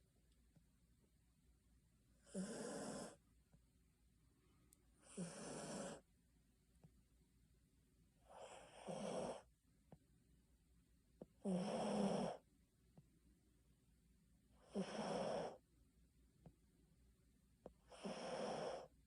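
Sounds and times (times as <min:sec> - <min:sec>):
dog snoring: 0:02.2 - 0:03.2, 0:05.0 - 0:06.0, 0:08.2 - 0:09.5, 0:11.4 - 0:12.4, 0:14.6 - 0:15.6, 0:17.7 - 0:18.9.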